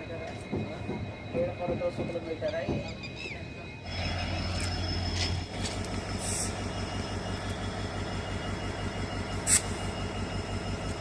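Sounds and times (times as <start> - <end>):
train rumbling on track: 0.0 - 11.0
sharp high hiss: 9.3 - 10.0.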